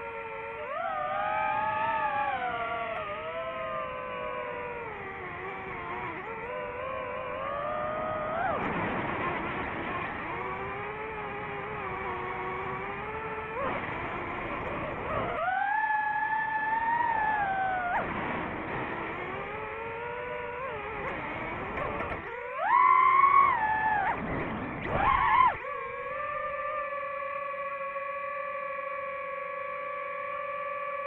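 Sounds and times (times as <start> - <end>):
drone propellers whining: 0.0 - 31.0.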